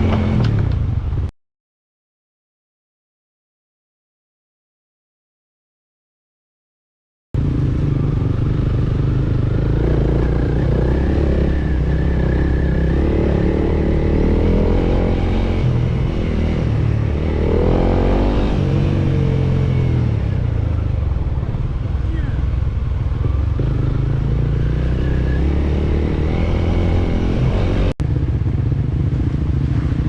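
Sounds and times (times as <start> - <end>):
motorcycle engine rumbling: 0.0 - 1.3, 7.4 - 30.0.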